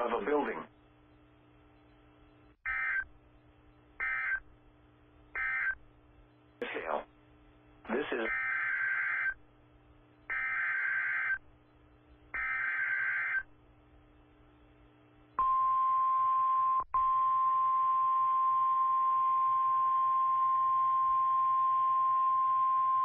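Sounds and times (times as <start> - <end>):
steady warning alarm tone: 2.7 - 3.1, 4.0 - 4.4, 5.4 - 5.8, 8.3 - 9.4, 10.3 - 11.4, 12.4 - 13.5.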